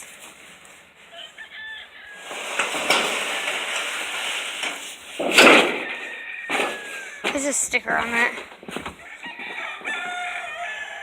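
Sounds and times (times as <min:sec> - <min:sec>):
rooster crowing: 0:01.1 - 0:02.8, 0:05.8 - 0:07.3, 0:09.0 - 0:11.0.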